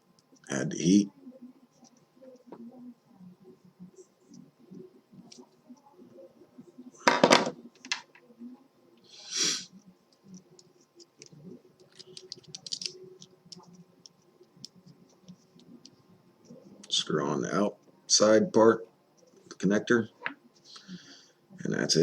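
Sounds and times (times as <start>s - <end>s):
short hiss: 9.2s - 9.7s.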